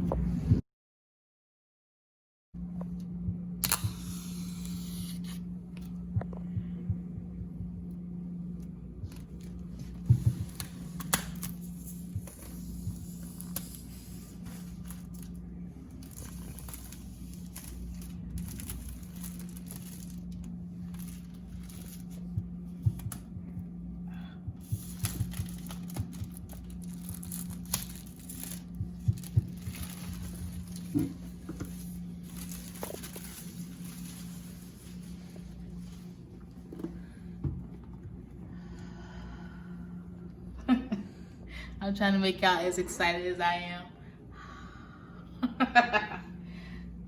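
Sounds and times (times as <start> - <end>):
steady low hum: 0.0 - 0.6, 2.6 - 47.0
paper and plastic crinkling: 9.1 - 23.1, 24.7 - 36.1.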